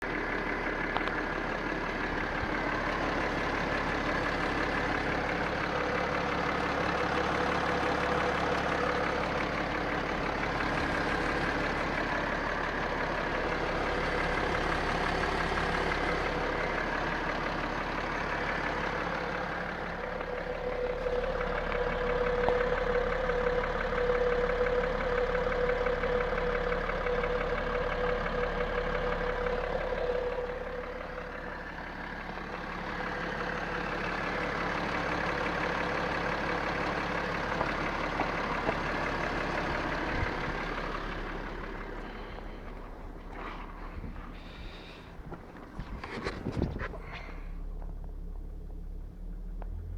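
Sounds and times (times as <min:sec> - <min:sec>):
diesel engine idling: 0:00.0 - 0:49.9
rhythmic engine knock: 0:00.0 - 0:49.9.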